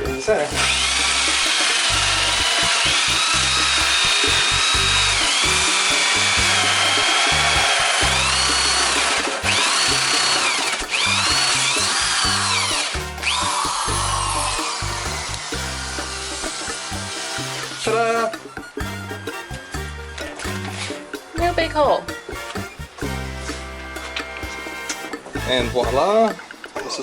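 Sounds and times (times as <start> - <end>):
power drill hole saw whining: 0.4 - 18.1.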